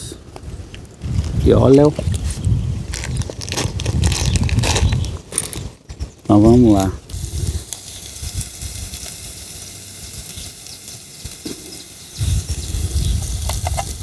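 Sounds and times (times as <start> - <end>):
food frying in oil: 7.1 - 14.0.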